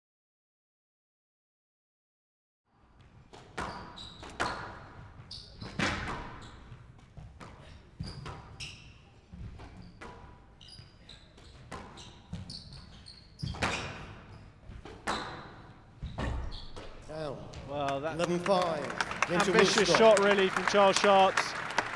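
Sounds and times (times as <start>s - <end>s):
shoes squeaking on court floor: 2.9s - 17.7s.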